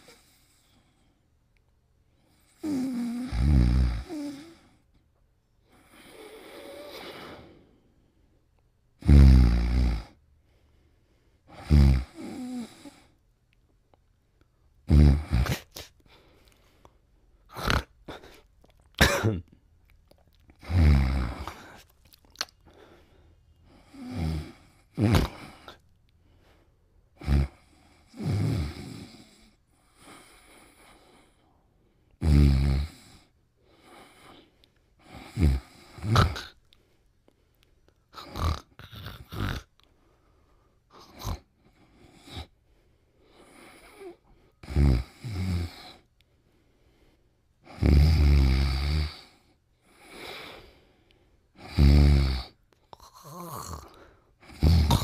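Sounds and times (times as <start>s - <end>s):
cartoon snoring and snorts: 2.6s - 4.6s, 9.0s - 10.2s, 11.5s - 13.1s, 14.9s - 15.9s, 17.5s - 18.4s, 20.6s - 21.8s, 23.8s - 25.8s, 27.2s - 29.5s, 32.2s - 33.3s, 35.0s - 36.6s, 38.1s - 39.7s, 40.9s - 42.5s, 43.7s - 46.0s, 47.7s - 49.4s, 51.6s - 55.0s.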